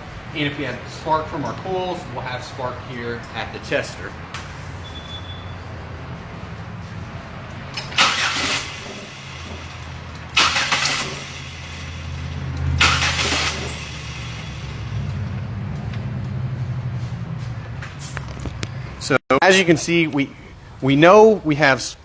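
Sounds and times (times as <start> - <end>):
car engine cranking without starting: 7.5 - 15.4.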